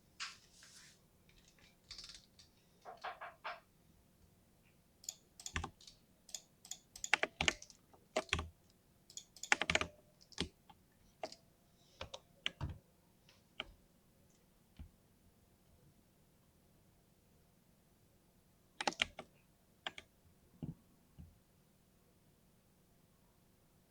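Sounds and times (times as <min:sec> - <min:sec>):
mechanical keyboard typing: 0:01.4 - 0:02.4, 0:05.0 - 0:08.5, 0:09.1 - 0:10.6, 0:18.8 - 0:19.3.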